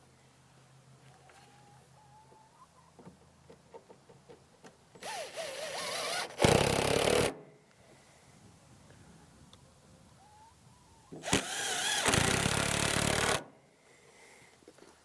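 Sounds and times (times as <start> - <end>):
cordless drill driving a screw: 5.0 - 7.4, 11.2 - 13.5.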